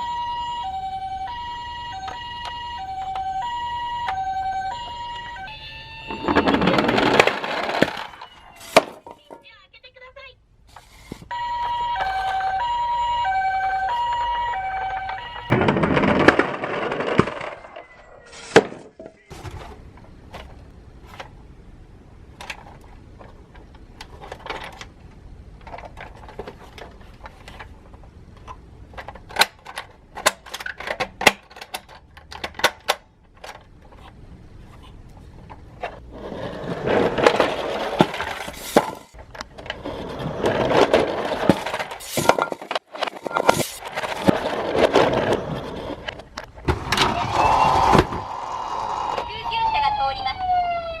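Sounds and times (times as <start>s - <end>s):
dense rattling noise: 6.1s - 8.3s, 15.4s - 17.9s.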